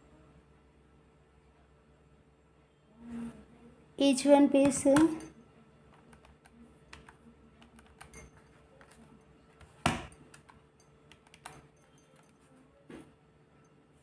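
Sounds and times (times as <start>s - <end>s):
metal jewellery clicking: 4.6s - 5.4s, 7.7s - 9.0s, 9.6s - 12.4s.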